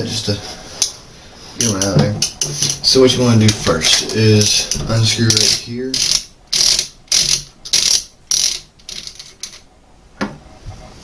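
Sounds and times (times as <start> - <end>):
cap ratcheting raspily: 1.6 - 9.6.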